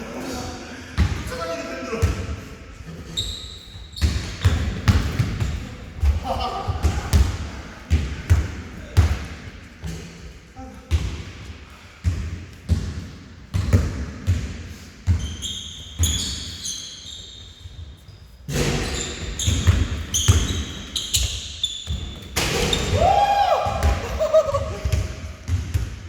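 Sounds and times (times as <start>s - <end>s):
basketball bouncing in gym: 2.0s - 26.0s
sneaker squeaks: 2.9s - 5.6s, 15.0s - 23.0s.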